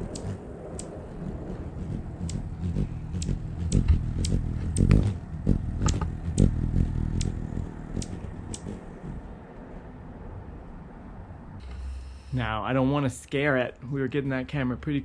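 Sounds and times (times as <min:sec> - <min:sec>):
sharp high clicks: 0:00.0 - 0:01.0, 0:01.8 - 0:09.1.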